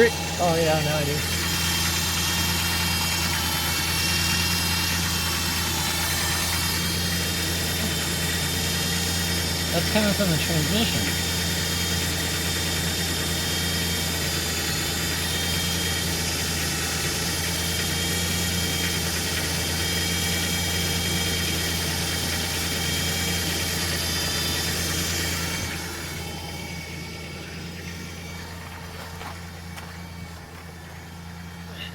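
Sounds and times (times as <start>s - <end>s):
engine hum: 0.0s - 31.9s
high-pitched transmission whine: 0.0s - 31.9s.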